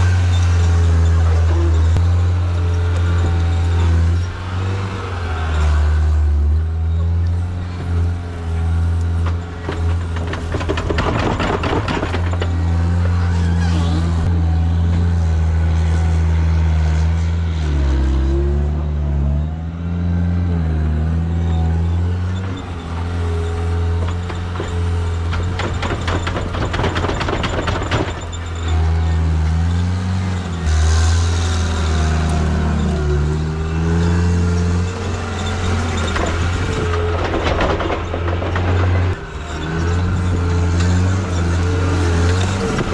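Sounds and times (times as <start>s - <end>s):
diesel engine under load: 0.0s - 42.9s
clattering: 8.9s - 13.8s, 22.3s - 29.0s, 31.4s - 42.9s.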